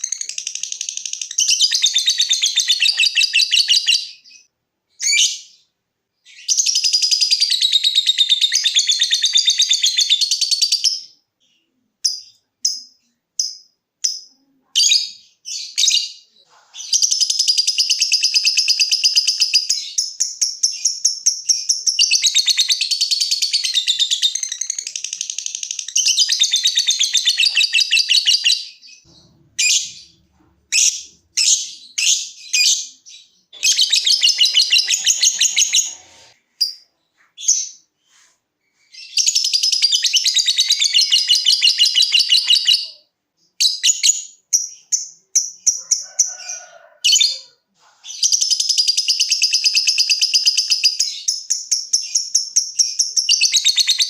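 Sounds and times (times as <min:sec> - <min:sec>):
lovebird chattering: 0:33.6 - 0:36.8
lovebird short chirps: 0:33.6 - 0:42.9.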